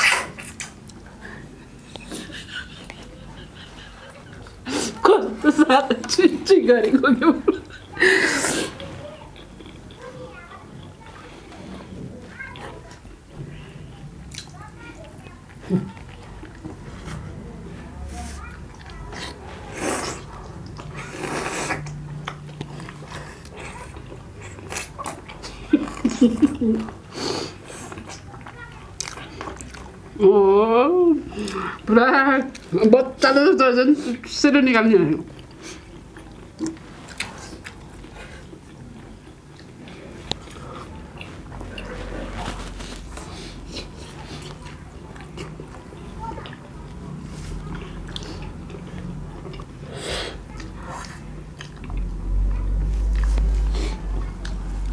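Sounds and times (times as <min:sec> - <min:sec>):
wet mouth chewing smacks: 0:00.0 - 0:01.0, 0:50.5 - 0:52.1
people chewing food: 0:00.0 - 0:54.9.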